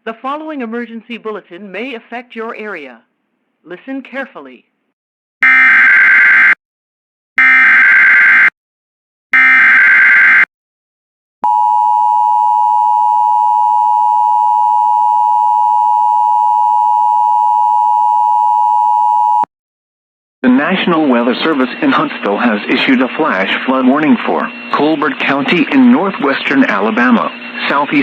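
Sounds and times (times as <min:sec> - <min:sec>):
digital data tone bursts: 0:21.4 - 0:28.0.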